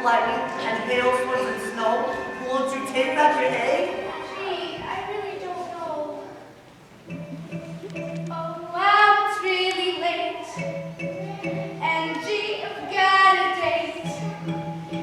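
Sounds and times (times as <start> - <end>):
backing music: 0.0 - 9.0, 10.6 - 12.4, 13.9 - 15.0
girl singing: 8.3 - 10.6, 11.2 - 15.0.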